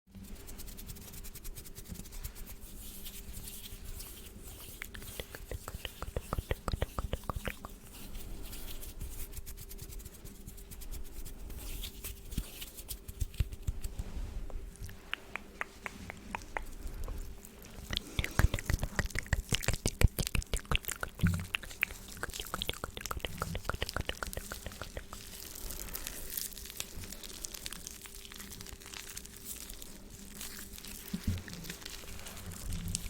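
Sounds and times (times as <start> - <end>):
wet mouth clicks and smacks: 4.6 - 7.9, 14.5 - 25.5.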